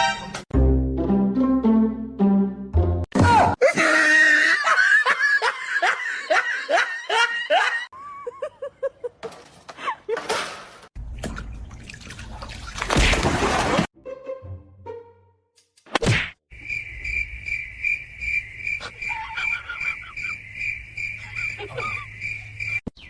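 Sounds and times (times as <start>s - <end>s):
person laughing: 3.6s - 9.2s, 18.8s - 20.4s, 21.2s - 22.2s
water splashing: 11.0s - 13.9s.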